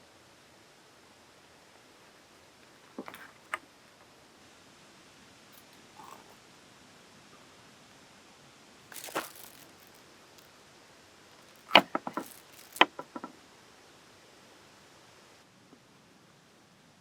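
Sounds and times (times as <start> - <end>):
quick rattling ticks: 8.9 - 10.5, 11.4 - 13.3
sharp clacks of hard objects: 11.4 - 13.3.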